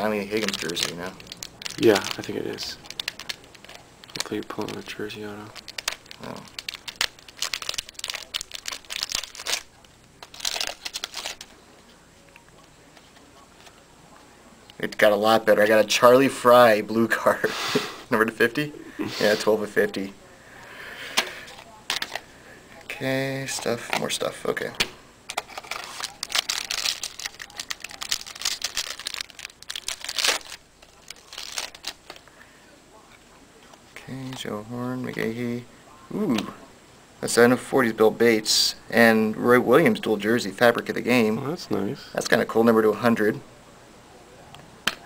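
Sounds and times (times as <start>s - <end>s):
wrapper crinkling: 0.2s - 11.5s, 25.3s - 32.3s.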